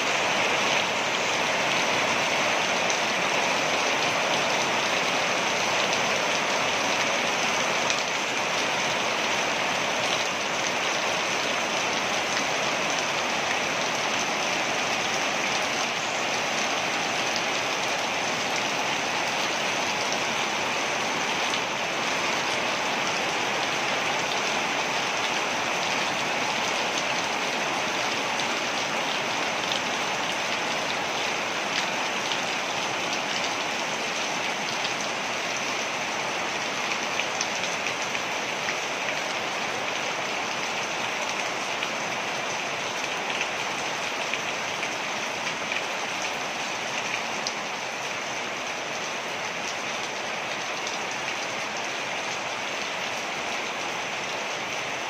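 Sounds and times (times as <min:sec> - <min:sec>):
waterfall rushing: 0:00.0 - 0:35.8.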